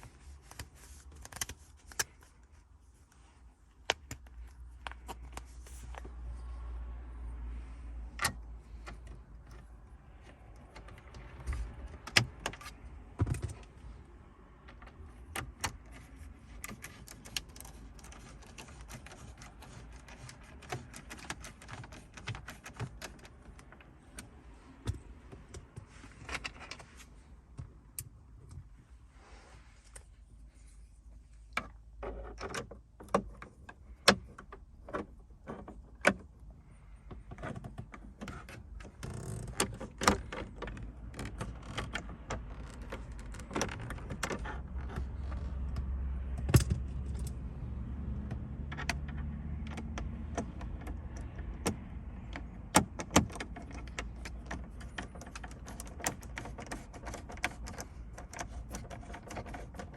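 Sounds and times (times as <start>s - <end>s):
handling rustle: 0.0s - 6.5s.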